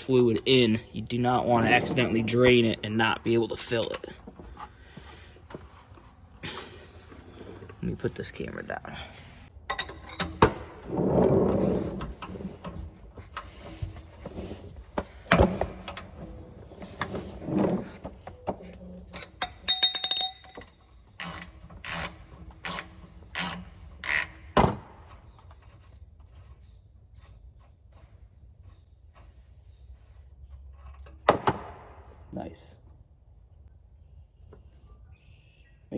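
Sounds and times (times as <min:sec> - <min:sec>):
metal tools clinking: 0:09.7 - 0:11.0, 0:18.6 - 0:24.2
ratchet clicking: 0:19.2 - 0:24.6.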